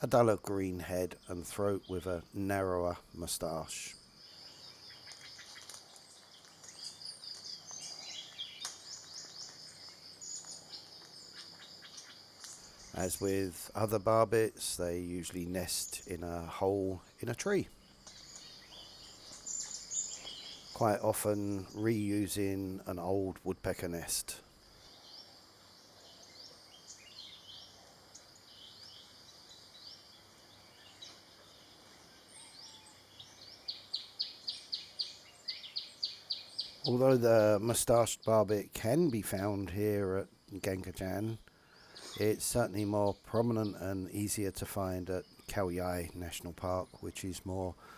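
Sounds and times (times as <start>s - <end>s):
insects hissing: 0.0s - 47.9s
small birds chirping and whistling: 3.8s - 22.8s, 41.1s - 47.9s.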